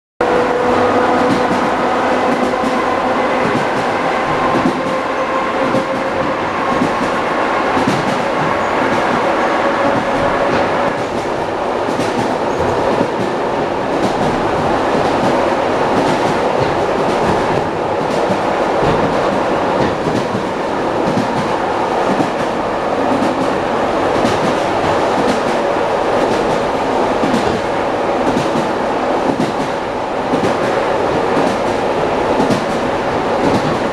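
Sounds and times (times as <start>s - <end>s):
train wheels clattering over rail joints: 9.8s - 25.6s, 32.4s - 33.9s.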